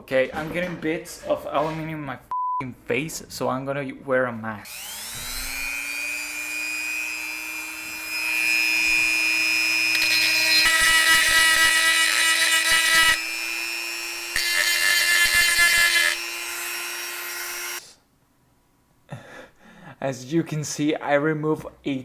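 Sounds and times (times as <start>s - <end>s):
rotary tool grinding metal: 4.7s - 17.8s.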